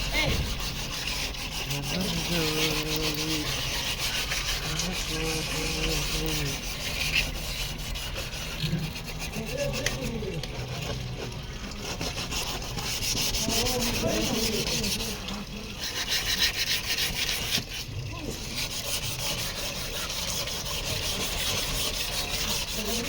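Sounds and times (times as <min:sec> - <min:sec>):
sandpaper rubbing on metal: 0:00.0 - 0:10.9, 0:11.8 - 0:23.0.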